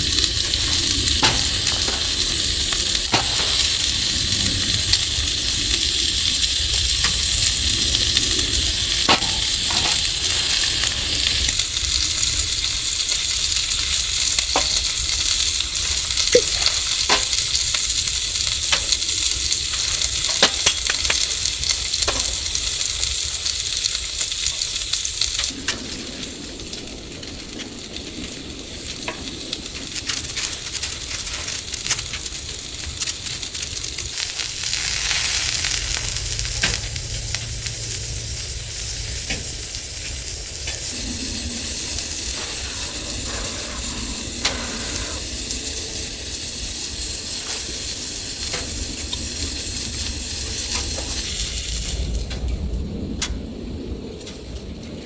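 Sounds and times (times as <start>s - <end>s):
food sizzling in a frying pan: 0.0s - 53.0s
utensil clicking against pan: 0.1s - 5.0s, 13.1s - 23.2s.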